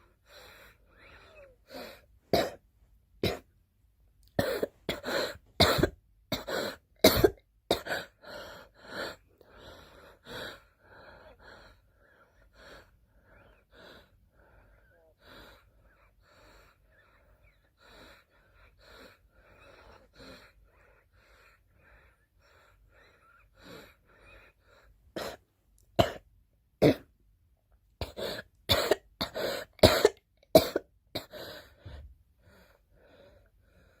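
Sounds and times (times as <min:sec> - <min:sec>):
girl coughing: 0:02.3 - 0:02.6, 0:03.2 - 0:03.5, 0:04.4 - 0:08.1, 0:26.0 - 0:26.2, 0:26.8 - 0:27.1, 0:28.0 - 0:31.4.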